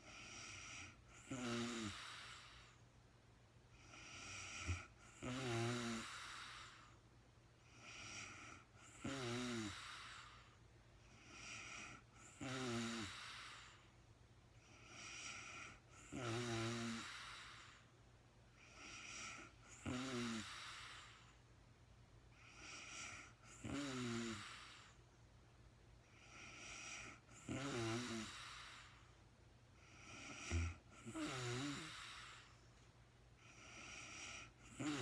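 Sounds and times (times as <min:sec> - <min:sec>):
woman snoring: 0:00.0 - 0:02.7, 0:03.8 - 0:06.9, 0:07.7 - 0:10.5, 0:11.2 - 0:13.8, 0:14.8 - 0:17.8, 0:18.6 - 0:21.3, 0:22.4 - 0:25.0, 0:26.2 - 0:29.0, 0:29.9 - 0:32.5, 0:33.4 - 0:35.0.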